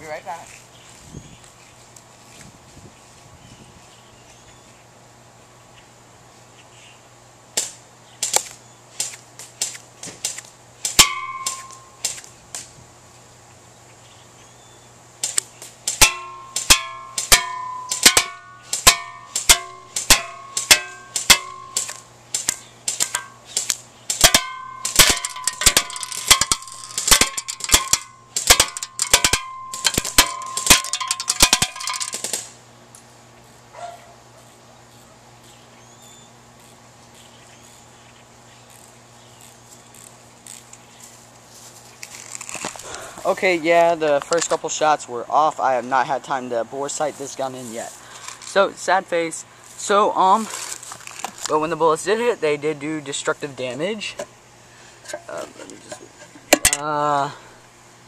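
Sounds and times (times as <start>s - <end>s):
bbs pinging on metal can: 11.0s - 12.0s, 16.0s - 22.0s, 23.0s - 23.4s, 24.2s - 32.2s
airsoft gun shots cracking: 15.2s - 32.6s.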